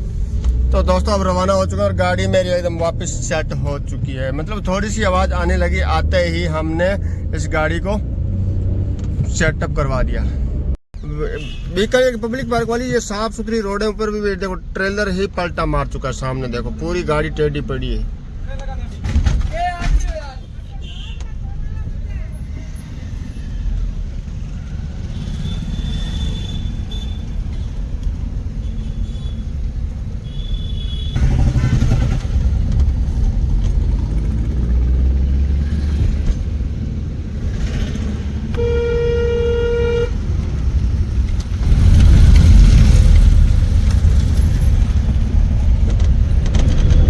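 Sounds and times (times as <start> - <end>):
car road and engine rumble: 0.0 - 47.0
vehicle horn: 11.3 - 11.8, 30.2 - 32.1, 38.5 - 40.2.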